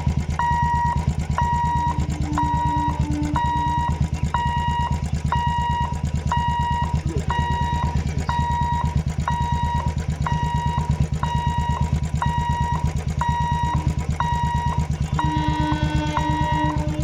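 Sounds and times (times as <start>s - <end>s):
low horn blasts: 0.0s - 8.5s, 12.3s - 17.0s
engine running: 0.0s - 17.0s
level-crossing warning hooter beeping: 0.0s - 17.0s.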